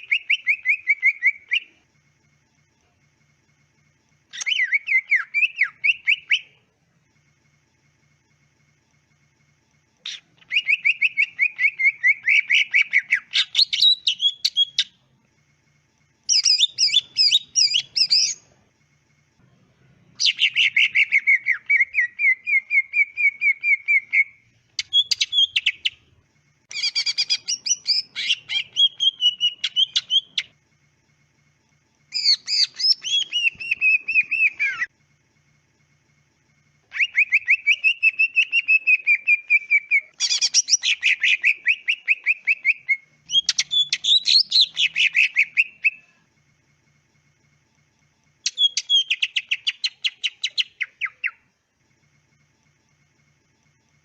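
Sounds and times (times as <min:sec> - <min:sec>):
bird singing chattering trills: 0:10.0 - 0:15.0, 0:16.3 - 0:18.4, 0:20.2 - 0:26.0, 0:26.7 - 0:30.6, 0:32.1 - 0:34.9, 0:36.9 - 0:46.2, 0:48.4 - 0:51.5.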